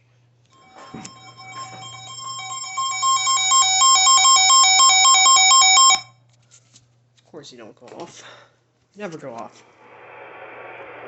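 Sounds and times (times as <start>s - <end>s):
two-pitch electronic alarm beeping: 0.6s - 6.1s.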